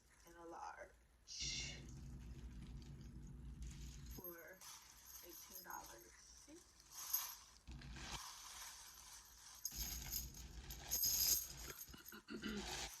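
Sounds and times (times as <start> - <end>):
metal belt jingling: 1.8 - 7.9, 8.8 - 12.1.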